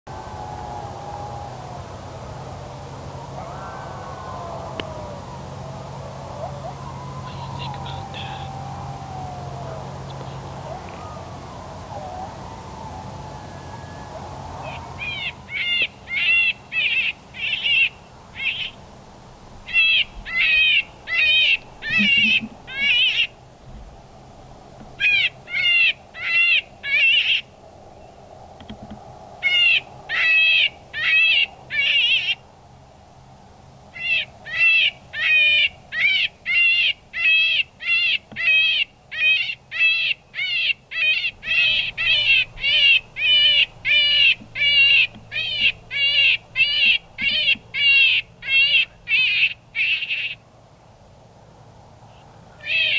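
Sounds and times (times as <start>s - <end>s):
electronic prey distress cries: 19.7s - 23.3s.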